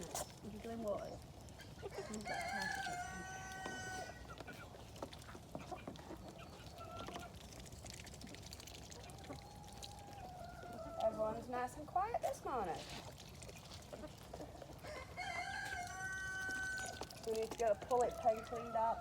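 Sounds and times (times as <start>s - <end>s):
rooster crowing: 1.9s - 4.2s, 14.8s - 17.1s.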